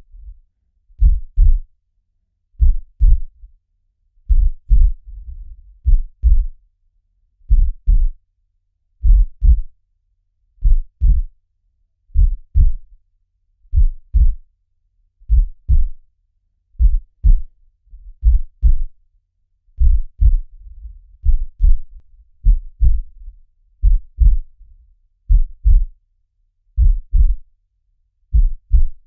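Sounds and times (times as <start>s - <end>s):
faint low rumble: 0.0s - 1.7s, 2.6s - 3.5s, 4.2s - 6.6s, 7.5s - 8.2s, 9.0s - 9.8s, 10.6s - 11.3s, 12.2s - 12.9s, 13.7s - 14.4s, 15.2s - 16.0s, 16.8s - 19.0s, 19.8s - 26.0s, 26.8s - 27.5s, 28.3s - 29.0s
heartbeat thumps: 1.0s - 1.7s, 2.6s - 3.3s, 4.3s - 6.6s, 7.5s - 8.2s, 9.0s - 9.7s, 10.6s - 11.3s, 12.2s - 12.9s, 13.7s - 14.4s, 15.3s - 16.0s, 16.8s - 19.0s, 19.8s - 24.6s, 25.3s - 26.0s, 26.8s - 27.4s, 28.3s - 29.0s.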